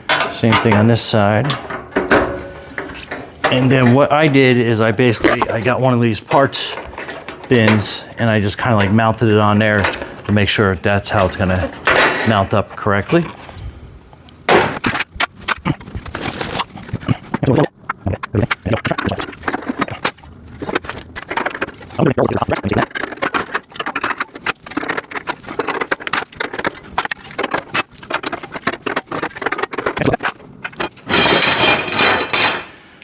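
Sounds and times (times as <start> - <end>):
metal rattling clatter: 0.0 - 12.5, 19.1 - 32.7.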